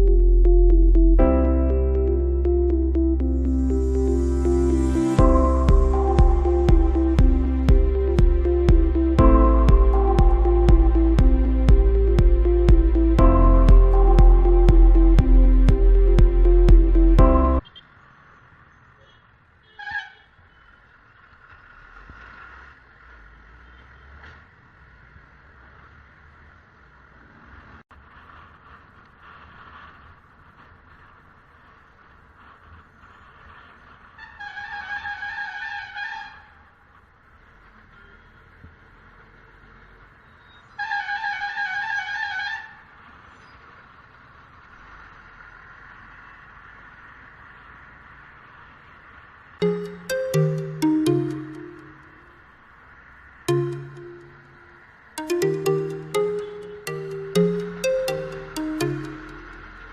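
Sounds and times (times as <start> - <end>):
road traffic noise: 0.0 - 50.6, 51.3 - 59.9
horn beep: 53.5 - 59.9.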